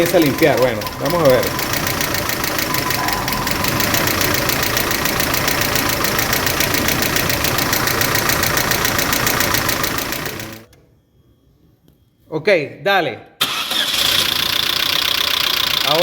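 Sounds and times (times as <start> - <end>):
fast valve tapping: 0.0 - 10.6
car engine idling: 0.0 - 10.7, 13.5 - 16.0.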